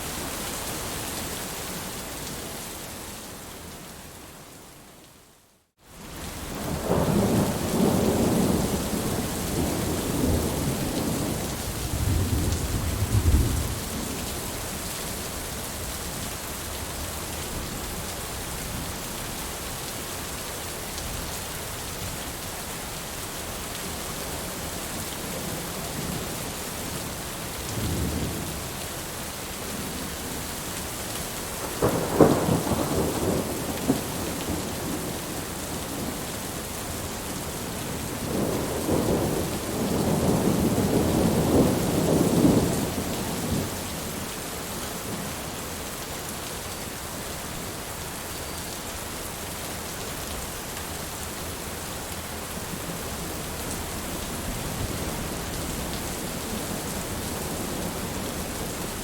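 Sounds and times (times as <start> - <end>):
steady rain pouring: 0.0 - 59.0
thunder rumbling: 31.8 - 36.2, 38.1 - 43.7.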